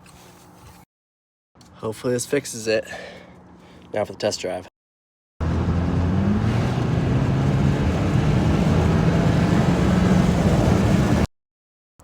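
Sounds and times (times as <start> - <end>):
car engine pulling: 5.4 - 11.3
road noise: 5.4 - 11.3.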